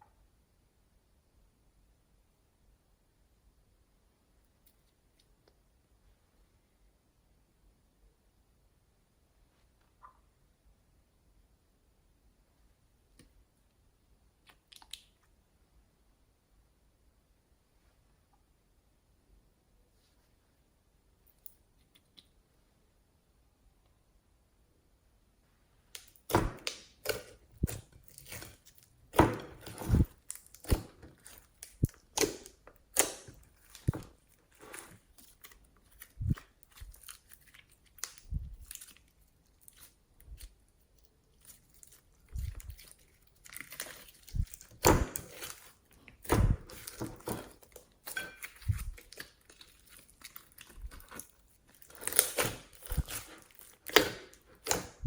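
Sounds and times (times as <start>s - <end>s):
slime squished by hand: 41.3s - 55.0s.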